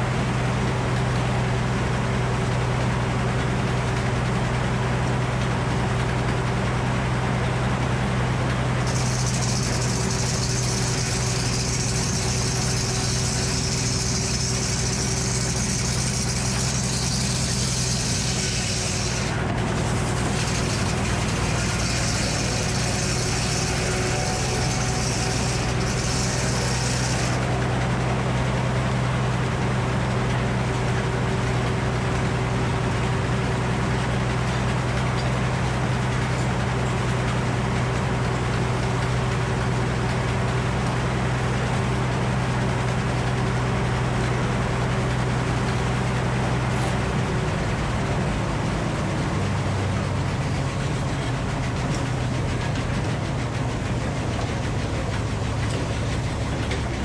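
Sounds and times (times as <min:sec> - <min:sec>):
sawmill engine humming: 0:00.0 - 0:57.0
saw blade cutting log hiss: 0:08.8 - 0:27.5.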